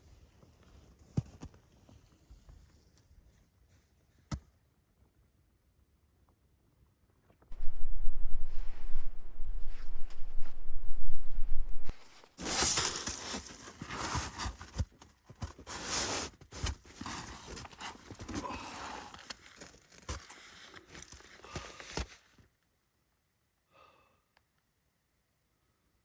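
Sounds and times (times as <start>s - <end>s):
rustling scraping and crunching: 11.9s - 22.4s.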